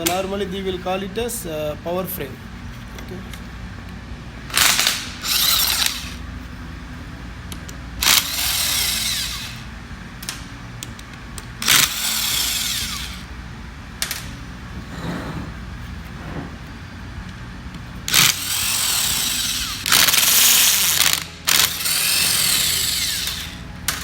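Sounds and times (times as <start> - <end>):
power tool bursts: 4.6 - 6.2, 8.0 - 9.7, 11.6 - 13.3, 18.1 - 23.6.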